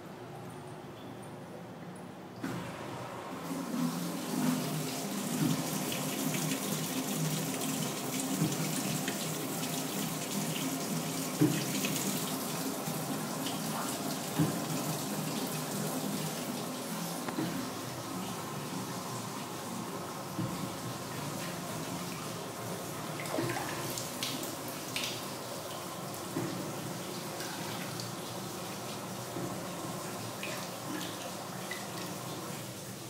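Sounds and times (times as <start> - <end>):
water rushing in washing machine: 2.4 - 33.0.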